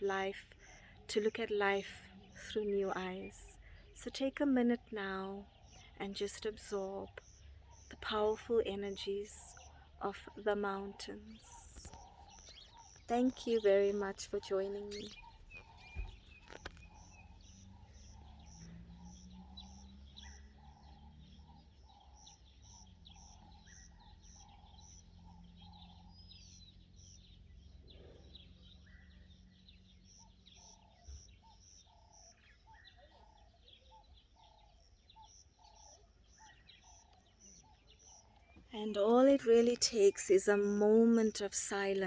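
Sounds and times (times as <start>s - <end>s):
birds chirping: 0.0s - 42.0s.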